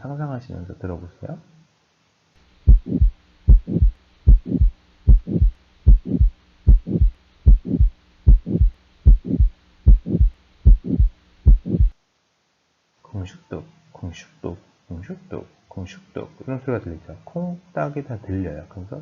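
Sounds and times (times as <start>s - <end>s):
faint steady hum: 0.0s - 19.0s
heart murmur: 2.7s - 12.0s
heartbeat lub-dub: 2.7s - 12.0s.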